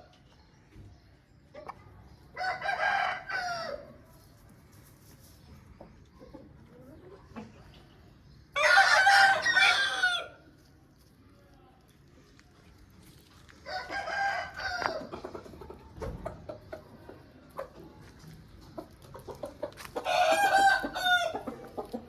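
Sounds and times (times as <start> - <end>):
rooster crowing: 8.6 - 10.4, 13.7 - 15.0, 20.1 - 21.4.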